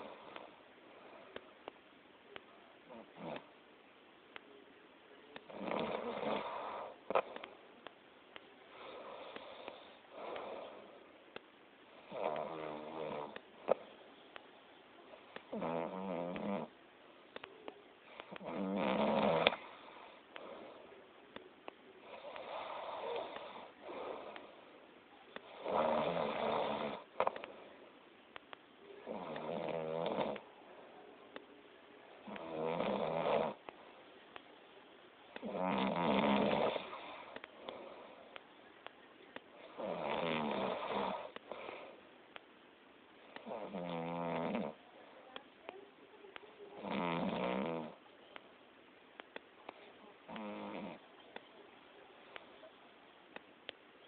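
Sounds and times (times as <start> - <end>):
quiet breathing: 0.0 - 54.0
person snoring loudly: 35.4 - 37.2, 39.8 - 41.3.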